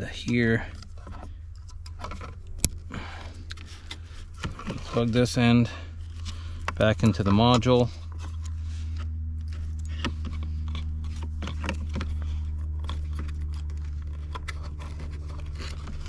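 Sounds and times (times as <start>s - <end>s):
steady low hum: 0.0s - 16.0s
plastic connector clicks and scrapes: 6.2s - 16.0s.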